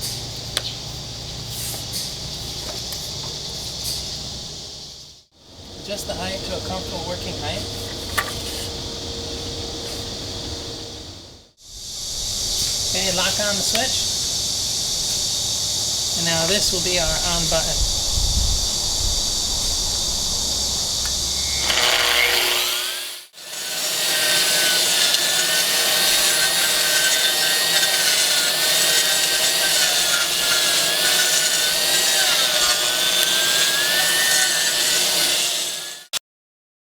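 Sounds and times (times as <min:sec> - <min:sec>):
steady hiss: 0:09.8 - 0:21.7
concrete grinder whining: 0:19.9 - 0:36.2.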